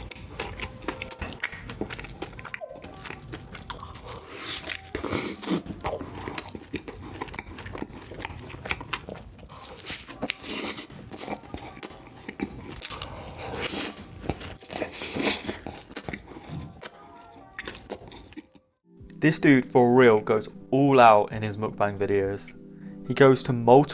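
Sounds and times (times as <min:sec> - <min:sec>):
crunchy bites and chewing: 0:00.0 - 0:18.7.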